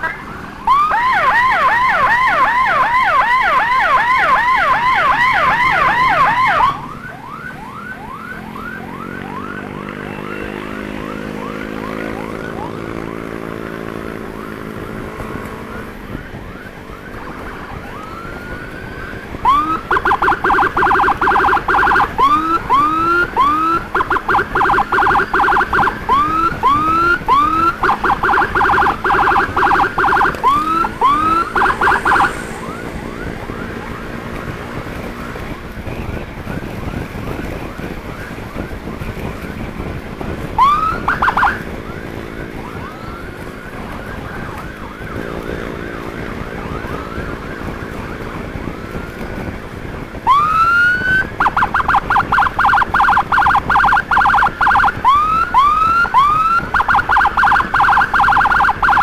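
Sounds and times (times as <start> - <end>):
emergency vehicle siren: 0.0 - 59.0.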